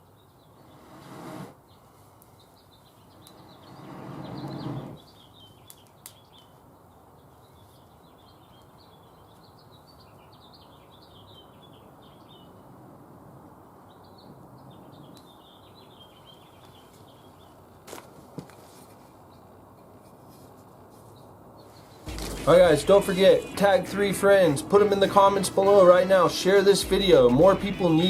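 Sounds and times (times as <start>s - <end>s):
small birds chirping: 0.0s - 12.8s, 13.8s - 17.8s, 21.0s - 28.0s
low outdoor rush: 17.9s - 28.0s
loud rush: 22.1s - 28.0s.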